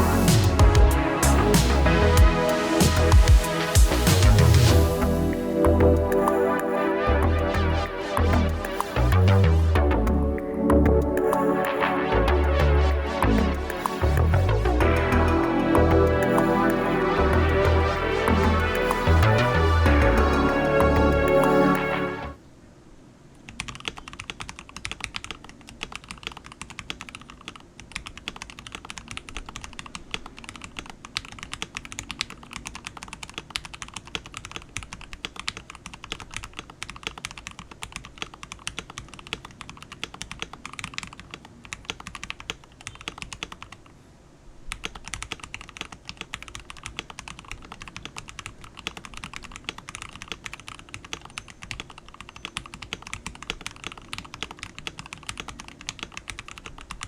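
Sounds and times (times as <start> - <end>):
mechanical keyboard typing: 23.5 - 43.8, 44.7 - 57.0.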